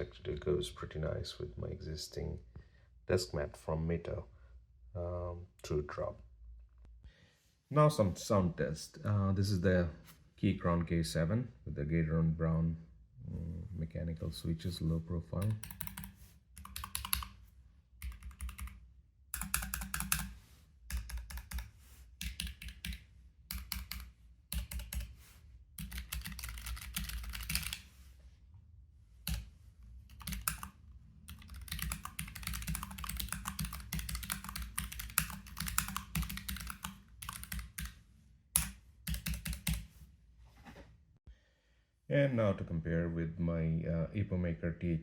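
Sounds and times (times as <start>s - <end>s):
mechanical keyboard typing: 15.4s - 17.4s, 18.0s - 18.8s, 19.4s - 25.1s, 25.8s - 27.8s, 30.1s - 38.0s, 38.6s - 39.9s.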